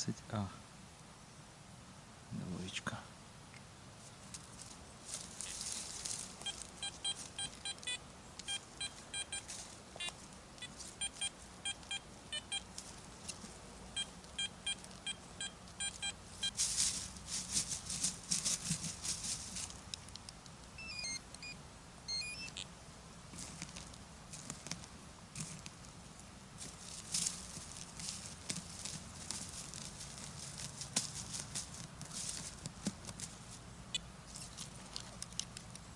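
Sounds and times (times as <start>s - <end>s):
scratchy rustling and scraping: 4.0s - 7.7s, 16.4s - 19.9s, 23.3s - 26.0s, 26.6s - 33.6s, 34.3s - 35.8s
metal detector beeping: 6.4s - 12.7s, 14.0s - 16.6s, 20.7s - 22.7s.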